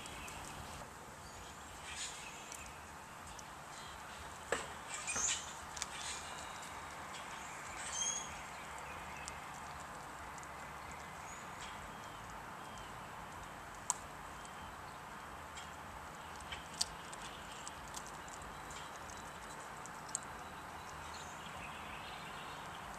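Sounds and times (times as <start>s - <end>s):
background hiss: 0.0s - 16.3s
dog crunching bones: 15.6s - 21.1s.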